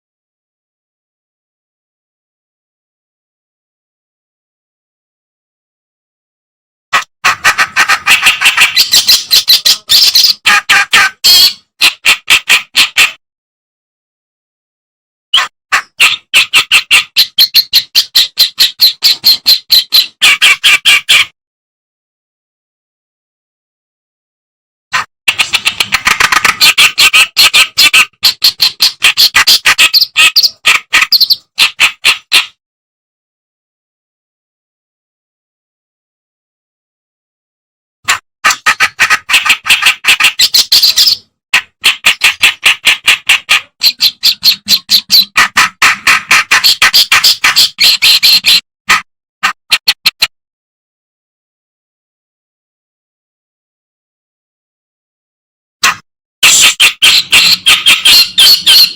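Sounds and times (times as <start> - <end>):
warbler harsh chattering notes: 7.4 - 10.6, 56.4 - 58.9.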